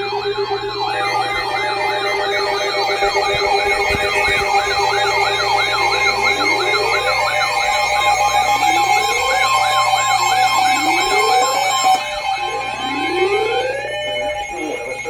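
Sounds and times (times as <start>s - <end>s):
fast yelping siren: 0.0s - 15.0s
steady alarm tones: 0.0s - 15.0s
slow rising wail: 5.0s - 15.0s.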